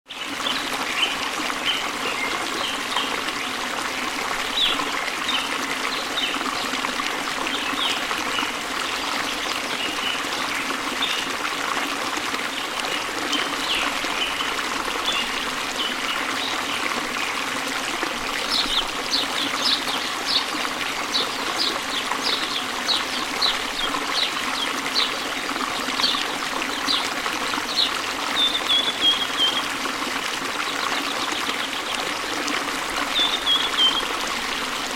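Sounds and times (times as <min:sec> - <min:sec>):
water trickling and splashing: 0:00.1 - 0:34.9
birds chirping: 0:27.7 - 0:29.7, 0:33.1 - 0:34.6.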